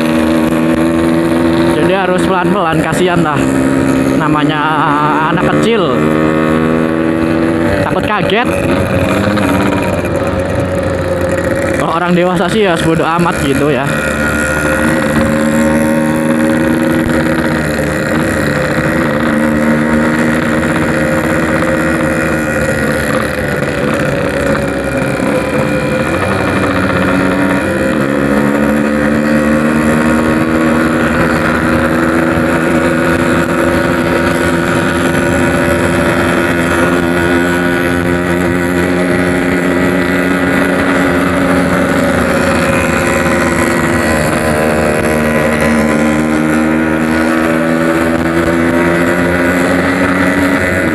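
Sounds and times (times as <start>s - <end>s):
two-stroke motorcycle engine: 0.0s - 50.9s.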